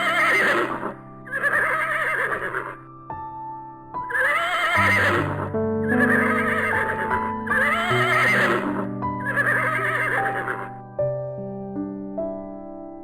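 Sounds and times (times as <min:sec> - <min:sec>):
horse whinnying: 0:00.0 - 0:02.8, 0:04.1 - 0:10.7
soft piano music: 0:00.0 - 0:13.0.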